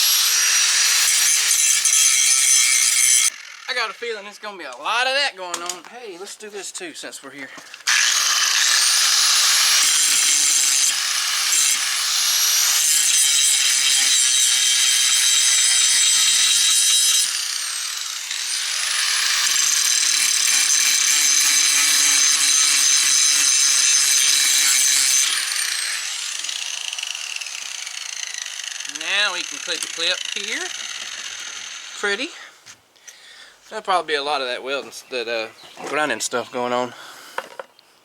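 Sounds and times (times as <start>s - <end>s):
angle grinder grinding metal: 0.0s - 4.6s, 7.6s - 32.4s.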